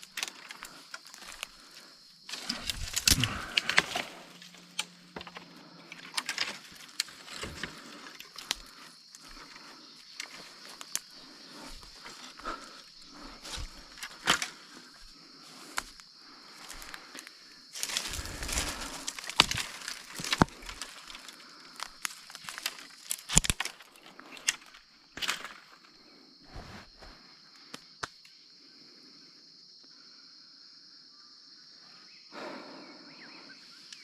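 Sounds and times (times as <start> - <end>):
sticks cracking and rustling: 0.0 - 16.0, 16.6 - 25.8.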